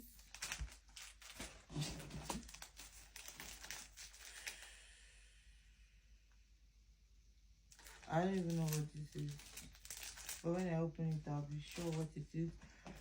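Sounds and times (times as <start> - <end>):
packaging crinkling and rustling: 0.1 - 4.7, 7.7 - 13.0.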